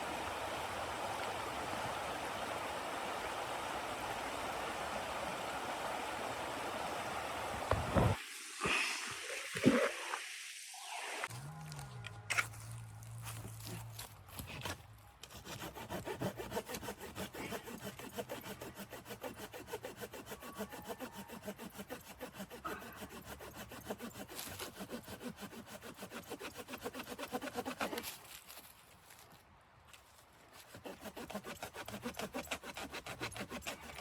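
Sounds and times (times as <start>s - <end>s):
hand saw cutting wood: 13.6s - 28.3s, 30.5s - 34.0s.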